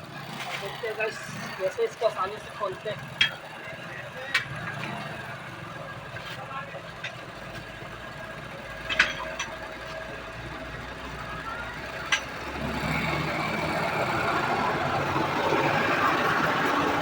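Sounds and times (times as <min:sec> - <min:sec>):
engine-like rumble: 0:00.0 - 0:17.0
metal tools clinking: 0:08.8 - 0:09.6.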